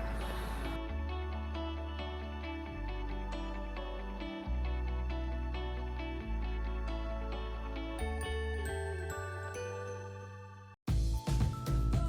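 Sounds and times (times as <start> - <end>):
gentle music with chime notes: 8.0 - 12.0.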